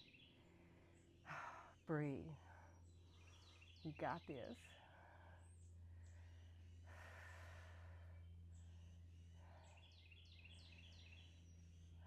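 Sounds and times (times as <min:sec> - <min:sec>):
low hum: 0:00.0 - 0:12.0
soft breaths: 0:04.6 - 0:10.9.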